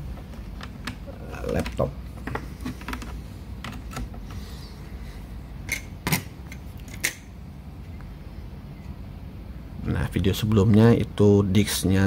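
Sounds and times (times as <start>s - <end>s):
clicks and knocks handling laptop: 0.1s - 4.4s.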